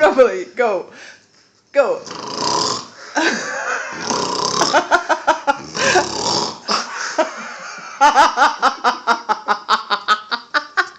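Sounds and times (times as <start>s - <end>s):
person fake snoring: 2.0s - 3.0s, 3.9s - 6.9s
pulsing laughter: 3.0s - 6.0s.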